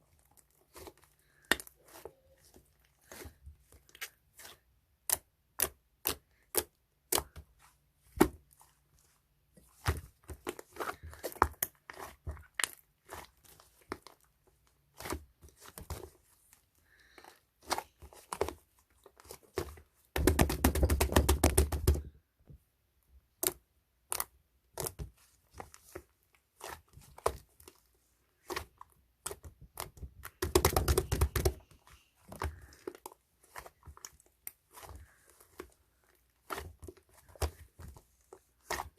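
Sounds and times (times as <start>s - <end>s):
slime popping and crackling: 28.4s - 31.7s.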